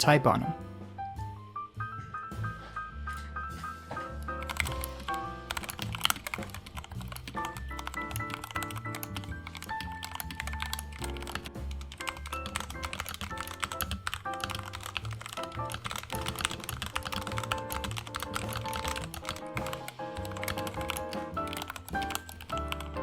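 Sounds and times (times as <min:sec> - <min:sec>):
background music: 0:00.0 - 0:23.0
mechanical keyboard typing: 0:04.2 - 0:23.0.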